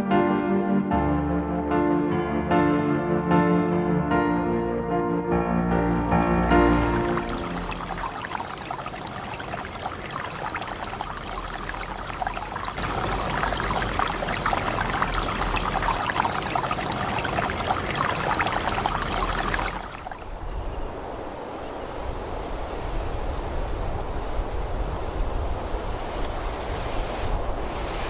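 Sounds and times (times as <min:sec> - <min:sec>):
running water rushing: 0:05.6 - 0:28.0.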